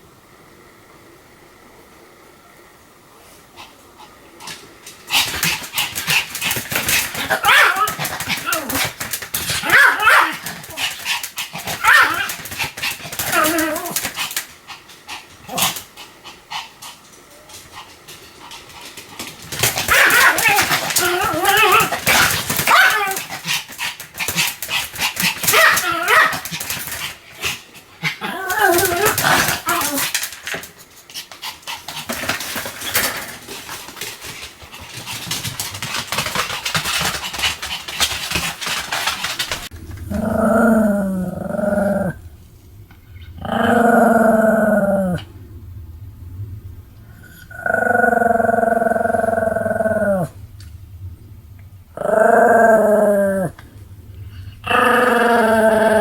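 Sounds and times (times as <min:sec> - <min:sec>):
dog barking and growling: 0:03.6 - 0:42.3, 0:43.3 - 0:45.3, 0:47.4 - 0:50.4, 0:51.9 - 0:53.6, 0:54.6 - 0:56.0
low hum: 0:31.9 - 0:56.0.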